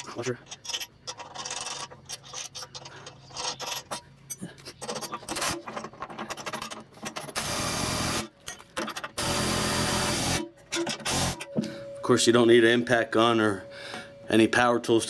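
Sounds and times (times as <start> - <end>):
metallic clicks and rattles: 0.0 - 7.4
impact wrench running: 7.3 - 8.3, 9.2 - 11.4.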